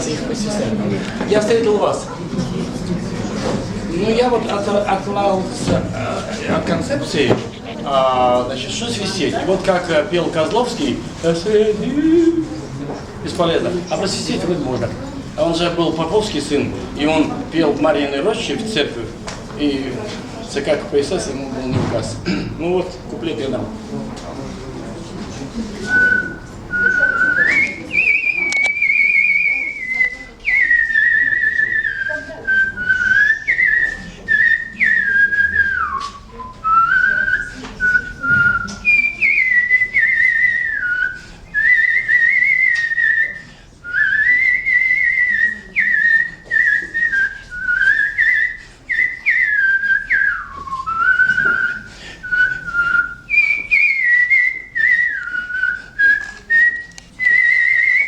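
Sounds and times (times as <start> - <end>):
man whistling a melody: 25.8 - 58.0.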